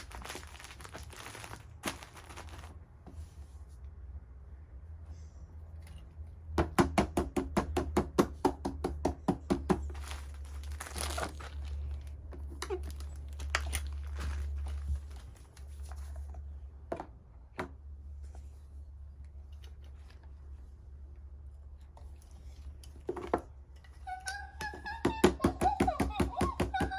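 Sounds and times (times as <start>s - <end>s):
rustling handling: 0.0s - 4.0s, 9.8s - 16.9s.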